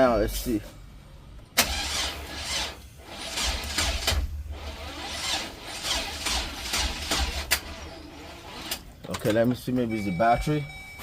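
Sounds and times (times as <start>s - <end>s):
starter cranking engine: 1.6s - 8.9s.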